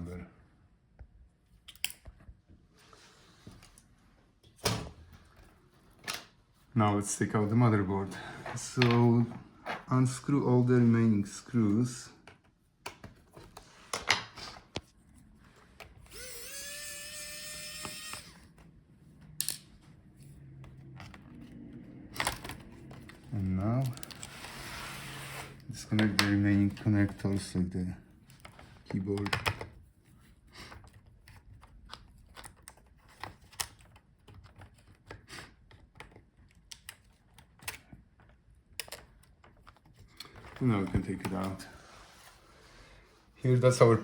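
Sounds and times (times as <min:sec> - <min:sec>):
electric screwdriver motor: 0:16.1 - 0:18.5
tool and screws clicking: 0:16.1 - 0:18.5.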